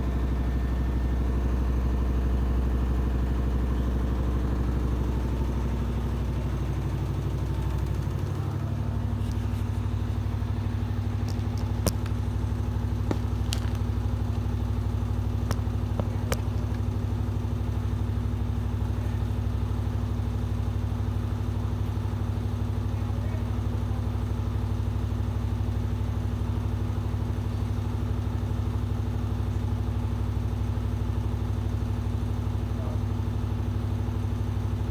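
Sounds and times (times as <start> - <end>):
washing machine humming: 0.0 - 34.9
sharp clicks: 11.1 - 12.3, 15.4 - 16.9.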